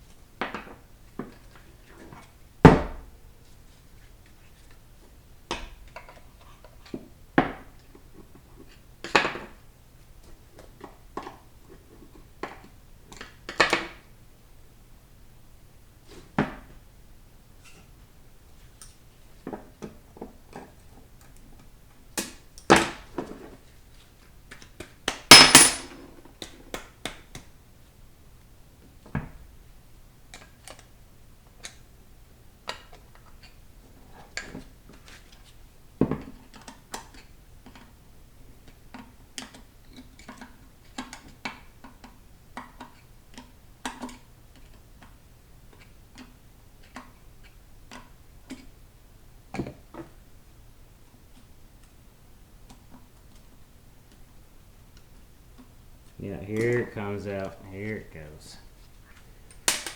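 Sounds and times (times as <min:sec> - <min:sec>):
metal clatter: 0:25.3 - 0:25.9
metal tools clinking: 0:25.3 - 0:26.0.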